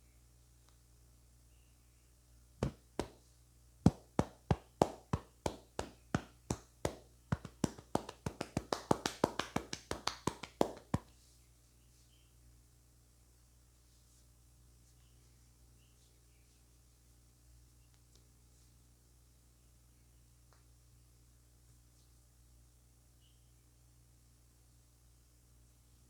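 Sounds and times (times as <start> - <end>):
hands slapping head: 2.6 - 3.3, 3.9 - 11.1.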